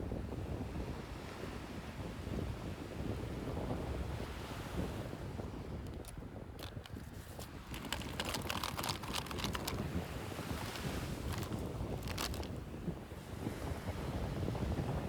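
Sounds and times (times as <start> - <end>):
packaging rustling: 5.8 - 12.7
plastic crackling and clicking: 5.8 - 12.7.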